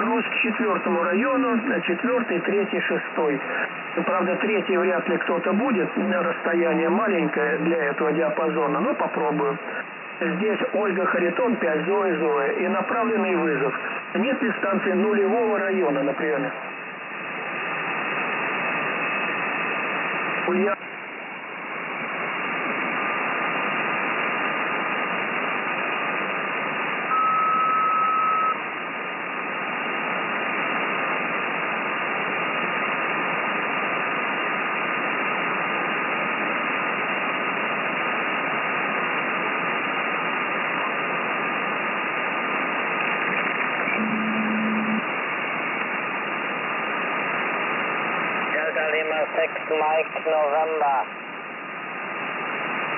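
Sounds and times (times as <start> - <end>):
radio static hiss: 0.0 - 52.9
faint constant whistle: 27.1 - 28.6
high beep: 27.1 - 28.6, 44.0 - 45.0
short low tone: 44.0 - 45.0.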